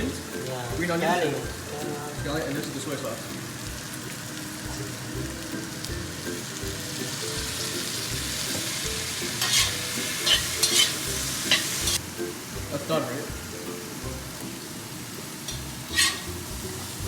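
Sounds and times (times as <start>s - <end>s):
cabbage sizzling in a wok: 0.0s - 17.0s
spatula scraping a wok: 7.2s - 12.0s, 15.4s - 17.0s.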